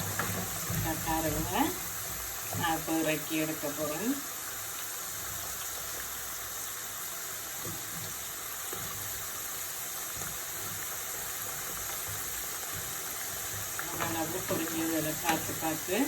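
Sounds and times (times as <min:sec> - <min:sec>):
food deep-frying in oil: 0:00.0 - 0:16.0.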